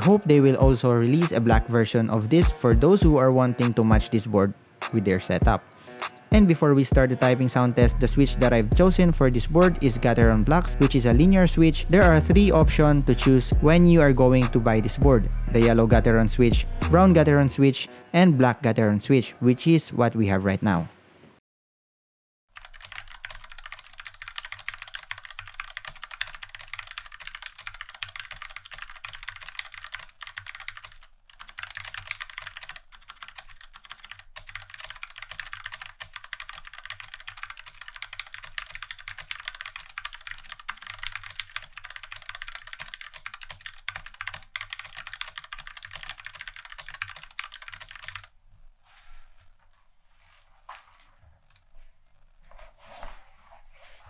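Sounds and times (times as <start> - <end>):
mechanical keyboard typing: 22.6 - 48.3.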